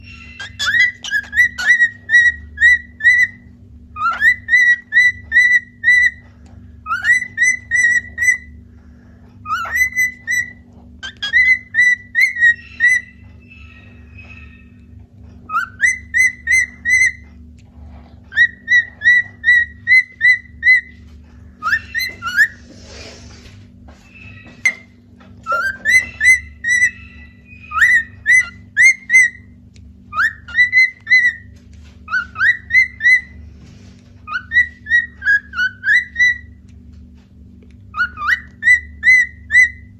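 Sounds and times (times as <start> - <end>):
cockatiel whistling: 0.0 - 6.2, 6.8 - 8.5, 9.4 - 14.8, 15.5 - 17.2, 18.3 - 20.9, 21.6 - 22.6, 25.5 - 29.4, 30.1 - 31.5, 32.1 - 33.4, 34.3 - 36.6, 37.9 - 39.9.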